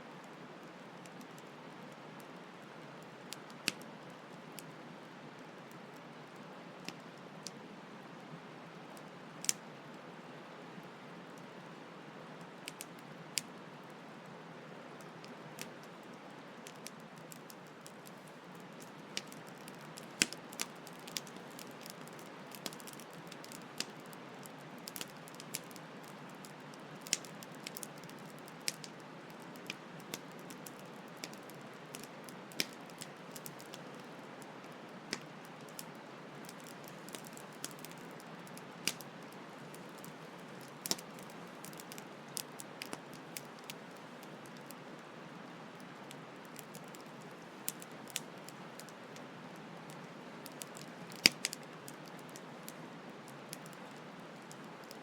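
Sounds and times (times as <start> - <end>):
campfire crackling and popping: 12.4 - 14.1, 15.0 - 45.1, 45.7 - 55.0.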